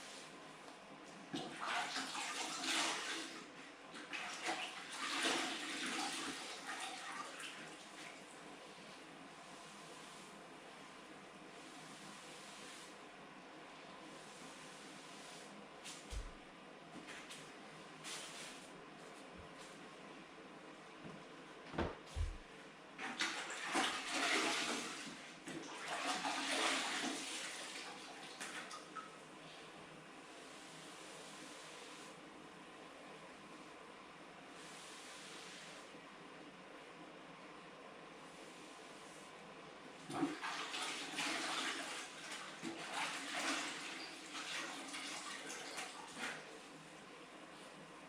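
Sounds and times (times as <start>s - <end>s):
water splashing and sloshing: 1.2s - 8.4s, 23.0s - 29.2s, 40.0s - 47.0s.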